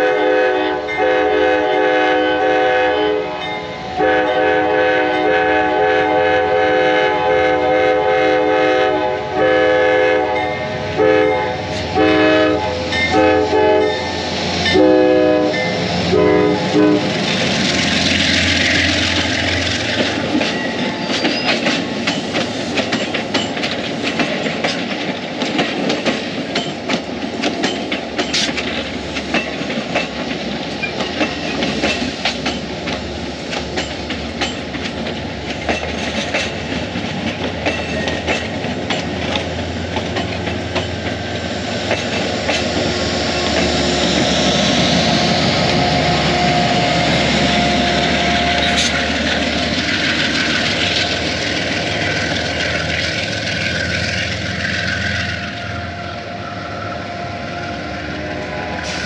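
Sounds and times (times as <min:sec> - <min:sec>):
train rumble: 0:00.0 - 0:59.0
train wheels clicking over rail joints: 0:11.6 - 0:56.2.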